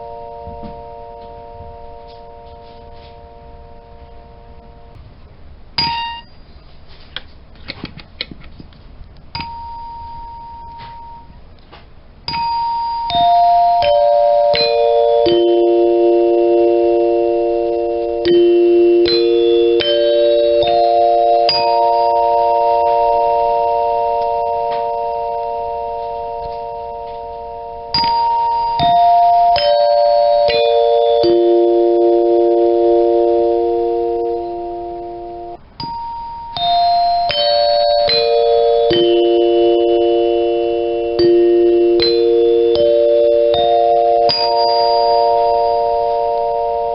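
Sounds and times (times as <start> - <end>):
dinner chime tubes ringing: 0.0 - 5.0, 9.4 - 11.4, 12.3 - 46.9.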